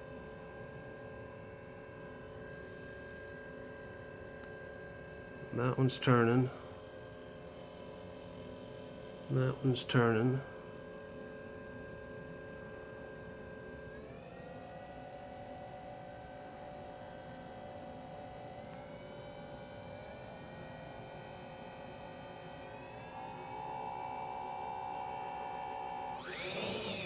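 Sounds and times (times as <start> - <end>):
drone motors whining: 21.6 - 27.0.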